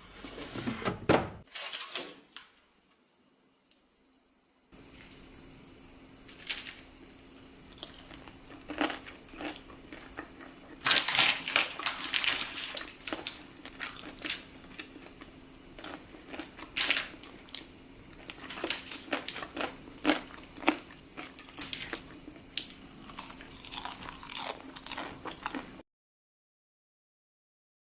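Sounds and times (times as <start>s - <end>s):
crispy potatoes being chewed: 7.7s - 25.8s.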